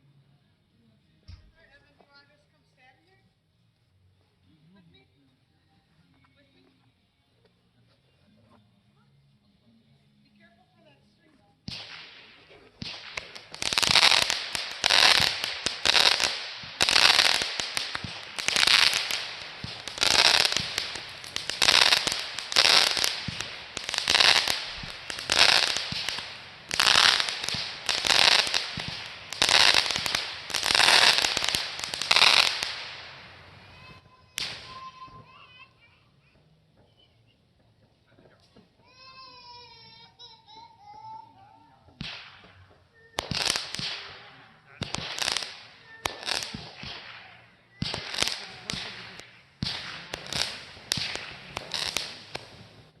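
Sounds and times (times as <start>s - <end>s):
fireworks bursts: 11.6s - 35.9s, 42.0s - 53.0s.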